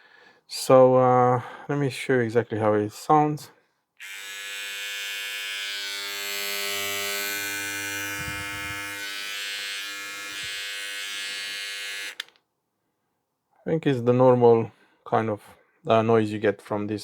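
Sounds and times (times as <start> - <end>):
facial trimmer buzzing: 4.0 - 12.4.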